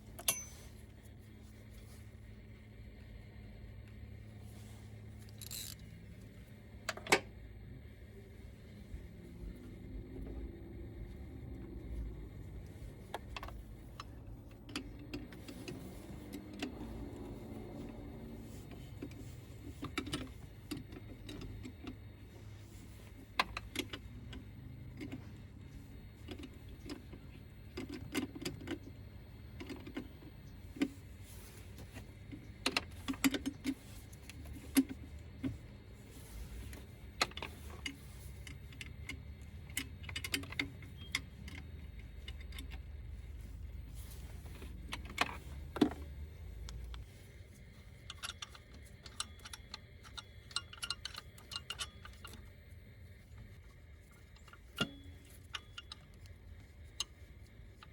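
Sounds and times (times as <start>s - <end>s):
hand tools and metal clinking: 0.0s - 1.0s, 5.2s - 6.0s, 12.3s - 57.9s
low steady hum: 0.0s - 57.9s.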